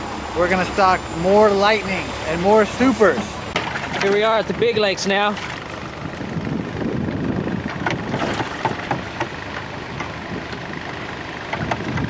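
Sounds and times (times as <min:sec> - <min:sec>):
water rushing and splashing: 0:00.0 - 0:05.9
wind buffeting microphone: 0:04.5 - 0:10.8, 0:11.4 - 0:12.0.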